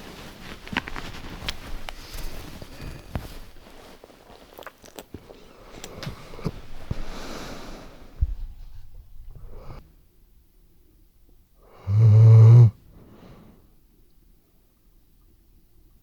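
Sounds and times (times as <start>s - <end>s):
dog rustling: 0.0s - 9.8s
dog breathing softly: 5.3s - 9.9s
dog snoring: 11.7s - 12.8s.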